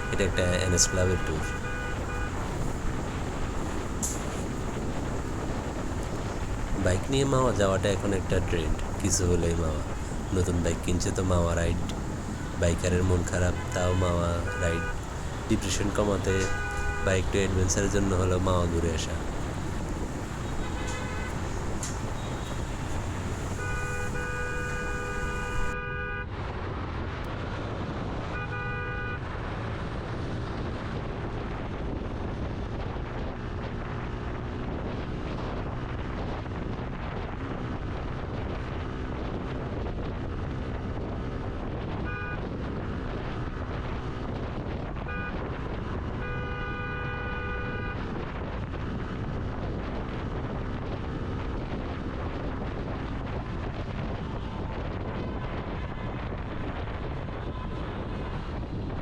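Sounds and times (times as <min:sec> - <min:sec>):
vehicle horns honking: 0:00.0 - 0:26.3, 0:28.3 - 0:29.3, 0:41.9 - 0:43.0, 0:45.0 - 0:48.3
road and wind noise: 0:00.0 - 0:59.0.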